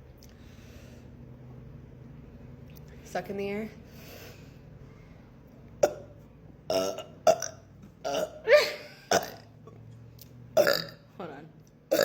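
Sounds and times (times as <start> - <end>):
person burping: 5.8 - 6.1, 6.7 - 9.8, 10.6 - 11.0.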